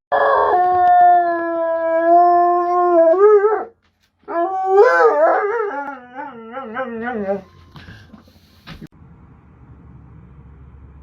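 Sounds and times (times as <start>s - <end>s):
dog howling: 0.1s - 7.6s.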